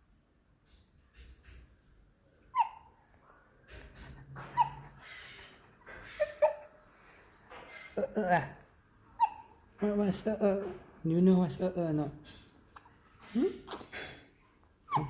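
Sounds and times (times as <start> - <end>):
baby hiccuping: 9.2 - 9.5.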